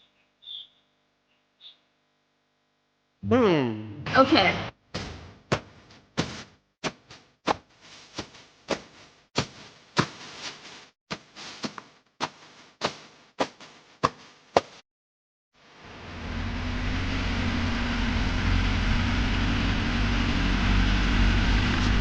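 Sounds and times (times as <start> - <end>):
sharp knocks: 5.0 - 7.6.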